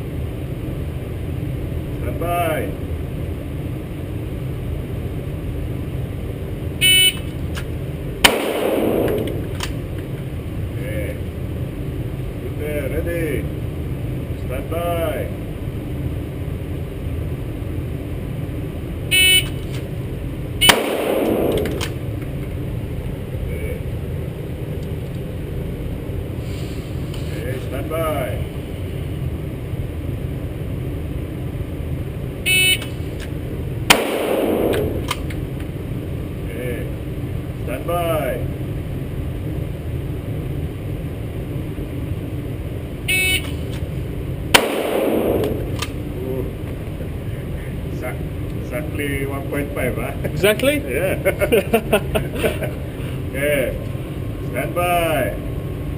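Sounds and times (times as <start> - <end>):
pistol shot with ringing tail: 8.2 - 9.8, 20.7 - 22.0, 33.9 - 35.3, 44.5 - 46.0.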